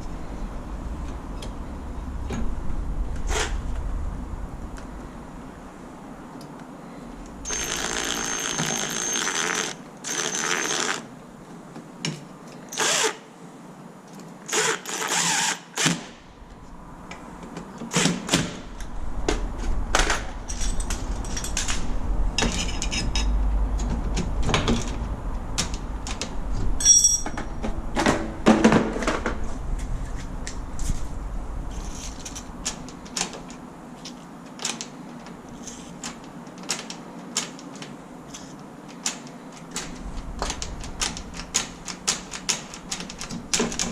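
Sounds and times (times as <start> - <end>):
cordless drill running: 7.5 - 11.0
tools and metal parts clicking: 7.5 - 11.0, 20.2 - 24.0, 26.8 - 27.5.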